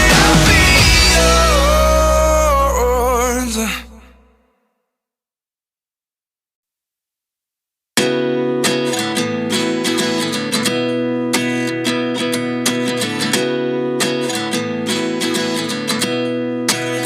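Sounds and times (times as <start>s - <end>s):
strummed acoustic guitar: 0.0s - 4.1s, 8.0s - 17.0s.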